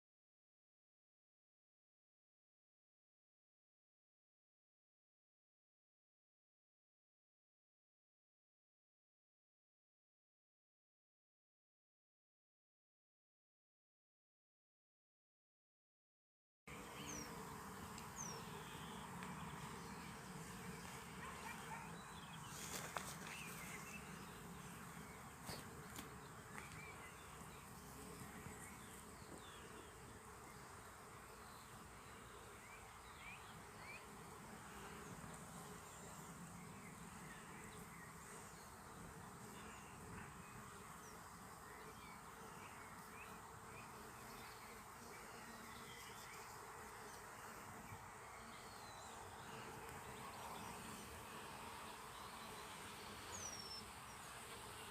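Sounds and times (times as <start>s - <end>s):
insects buzzing: 16.7s - 54.9s.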